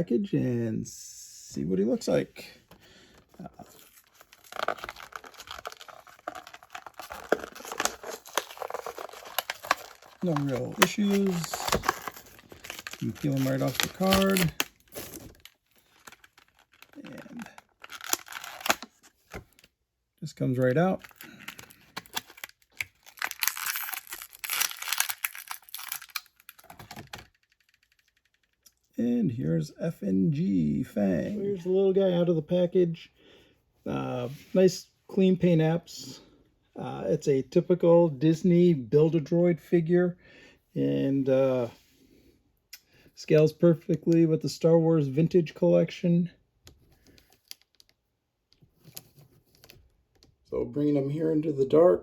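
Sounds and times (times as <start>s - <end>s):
plastic packaging crinkling: 3.6s - 19.6s, 21.0s - 27.8s.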